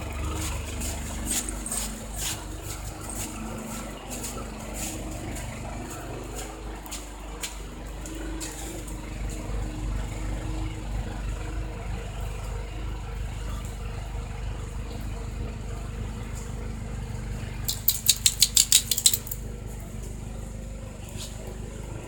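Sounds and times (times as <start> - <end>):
snowblower engine idling: 0.0 - 22.0
sharp clicks: 17.7 - 19.4.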